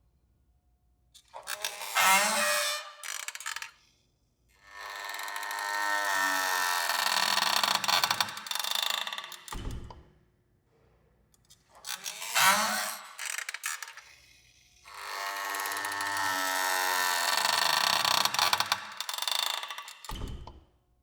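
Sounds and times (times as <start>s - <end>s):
door creaking on hinges: 1.4s - 3.8s, 4.7s - 9.9s, 11.8s - 14.0s, 14.9s - 20.5s.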